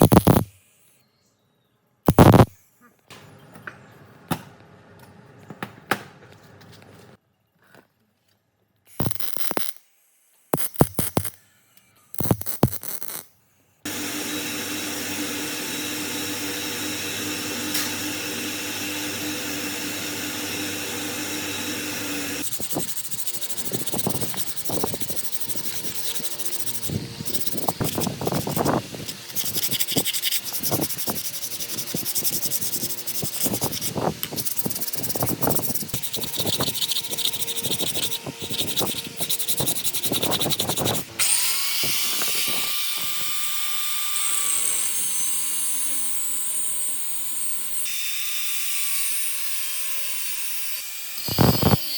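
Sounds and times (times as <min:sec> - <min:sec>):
sanding rust off metal: 0:15.7 - 0:43.4.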